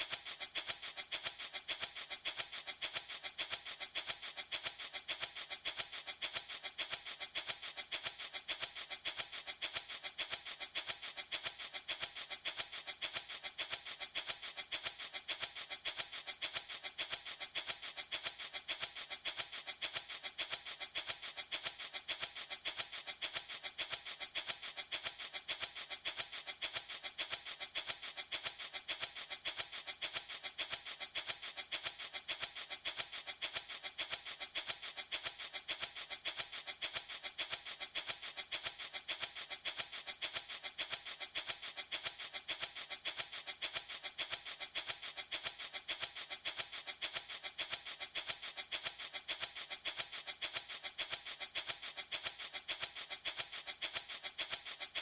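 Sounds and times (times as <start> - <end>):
baby rattle shaking: 0.0 - 55.0.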